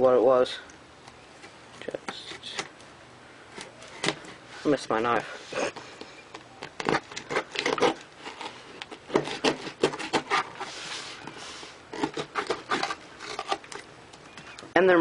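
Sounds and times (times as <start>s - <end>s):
scraping rasp on cardboard: 6.8s - 13.8s.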